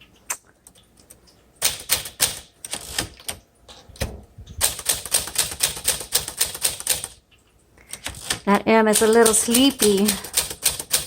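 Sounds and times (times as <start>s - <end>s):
typewriter key strikes: 1.6s - 3.4s, 4.0s - 7.2s, 7.9s - 11.0s.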